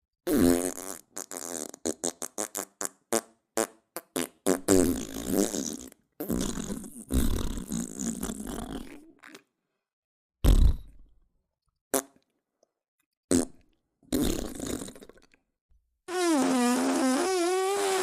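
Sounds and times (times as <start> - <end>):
fart sound effects: 0.3 - 8.9, 10.4 - 11.0, 13.3 - 15.1, 16.1 - 18.0.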